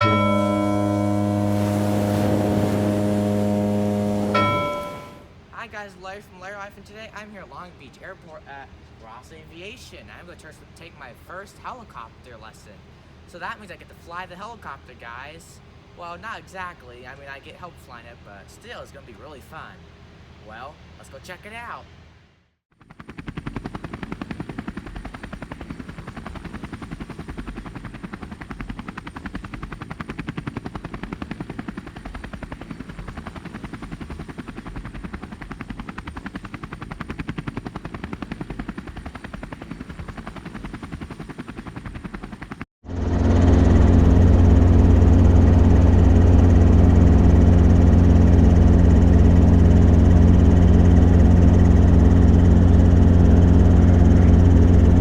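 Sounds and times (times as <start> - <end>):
helicopter rotor beating: 0.0 - 5.3, 22.7 - 55.0
engine and rotor drone: 0.0 - 5.5, 22.7 - 55.0.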